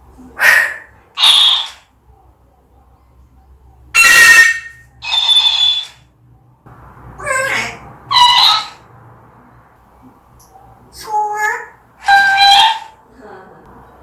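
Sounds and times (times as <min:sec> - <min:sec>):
parrot screeching: 0:00.4 - 0:01.9, 0:04.0 - 0:06.0, 0:07.2 - 0:08.9, 0:11.0 - 0:13.0.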